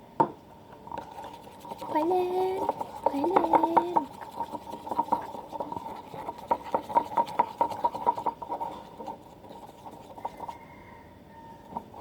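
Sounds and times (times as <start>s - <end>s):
stirrer tapping against container: 0.8s - 10.7s, 11.6s - 12.0s.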